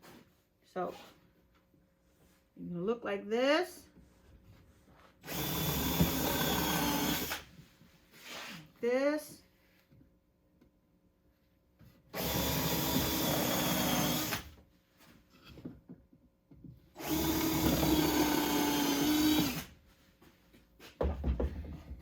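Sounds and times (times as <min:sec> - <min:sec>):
power drill driving screws: 0:05.2 - 0:07.5, 0:12.2 - 0:14.5, 0:17.0 - 0:19.7.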